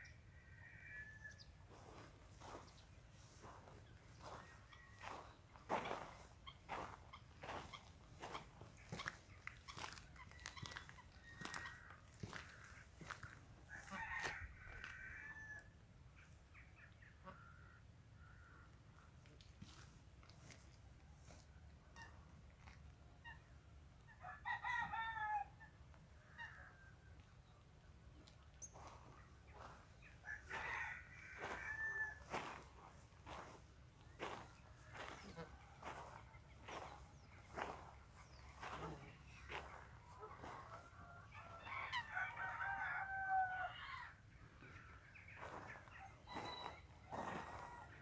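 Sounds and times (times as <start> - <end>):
rooster crowing: 11.4 - 15.7, 29.6 - 32.6, 33.3 - 33.5, 35.8 - 36.9, 38.6 - 39.8, 40.4 - 44.1, 45.4 - 48.0.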